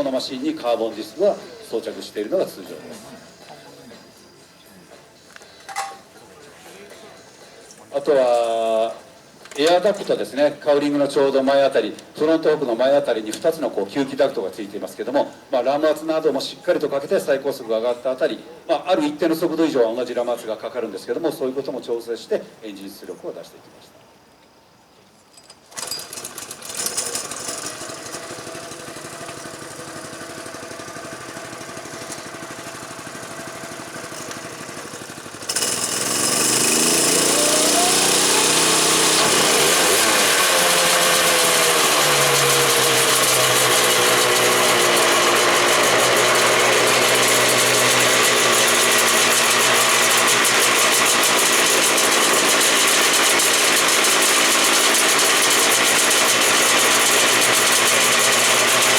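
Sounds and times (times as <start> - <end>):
two-stroke race engine revving: 25.8 - 58.9.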